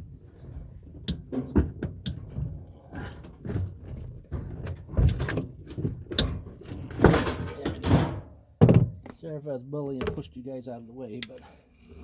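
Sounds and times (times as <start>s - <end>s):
metal parts knocking and rattling: 1.0s - 9.2s.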